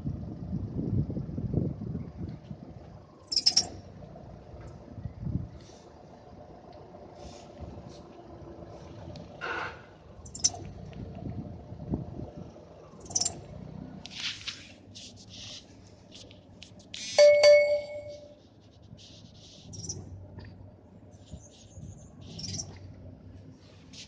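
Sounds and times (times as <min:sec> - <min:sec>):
hissy rustles: 0:14.1 - 0:17.2.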